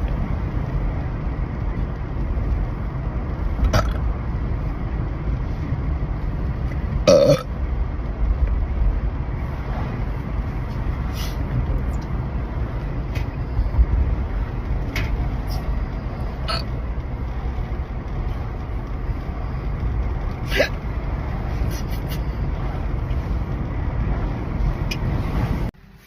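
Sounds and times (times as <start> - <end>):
steady low rumble: 0.0 - 26.0
sharp hiccups: 7.1 - 7.5, 16.4 - 16.7, 20.4 - 20.8
woman burping loudly: 7.1 - 7.5.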